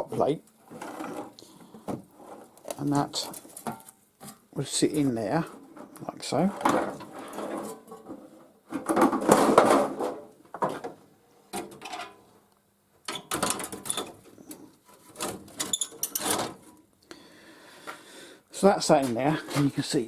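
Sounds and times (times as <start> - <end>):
scraping and knocking on sheet metal: 6.6 - 10.8.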